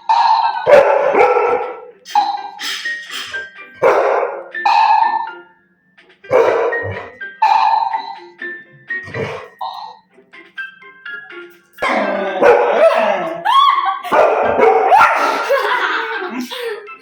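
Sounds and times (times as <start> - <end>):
dog barking: 0.1 - 1.9, 3.8 - 5.4, 6.3 - 8.2, 11.8 - 13.3, 14.1 - 15.4.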